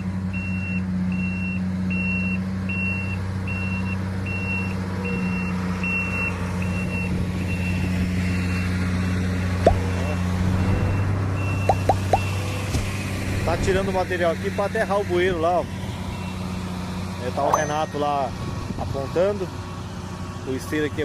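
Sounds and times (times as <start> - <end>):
heavy diesel engine running: 4.2 - 21.0.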